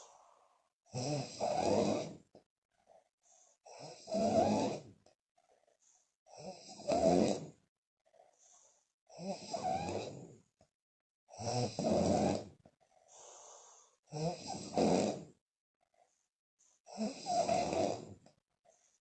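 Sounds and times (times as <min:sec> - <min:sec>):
soft breath: 0:00.0 - 0:00.7, 0:02.7 - 0:03.7, 0:08.0 - 0:08.9, 0:12.8 - 0:14.0
woman snoring loudly: 0:00.9 - 0:02.3, 0:03.7 - 0:04.9, 0:06.3 - 0:07.6, 0:09.1 - 0:10.3, 0:11.3 - 0:12.6, 0:14.1 - 0:15.4, 0:16.9 - 0:18.2.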